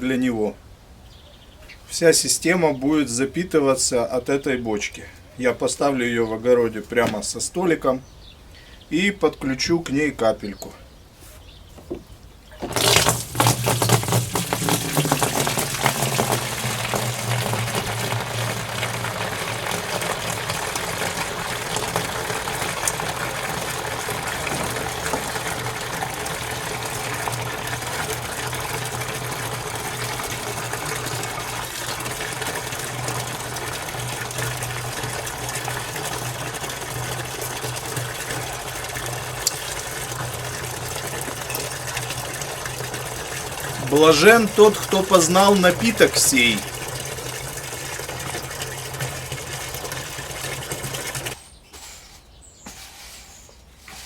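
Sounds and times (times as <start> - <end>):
liquid pouring into barrel: 12.5 - 51.4.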